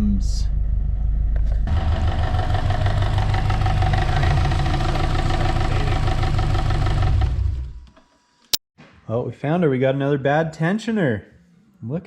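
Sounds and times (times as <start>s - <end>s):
car engine idling: 0.6s - 7.8s
rapid knocking from engine: 1.7s - 7.4s.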